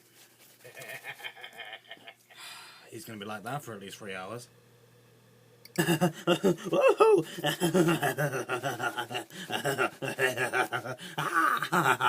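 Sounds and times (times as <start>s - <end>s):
person laughing hard: 0.6s - 2.4s, 5.7s - 12.0s.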